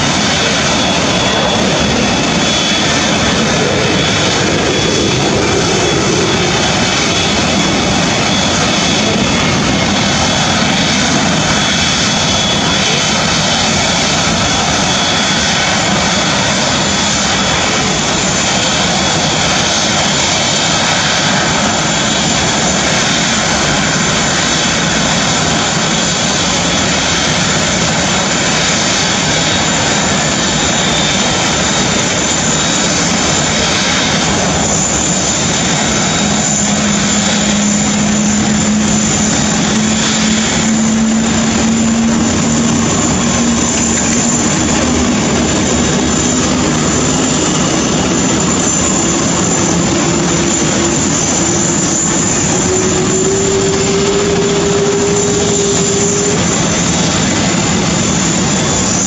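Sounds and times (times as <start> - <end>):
low hum rising in pitch: 0.0 - 19.9, 35.5 - 58.1
jet engines running: 0.0 - 59.0.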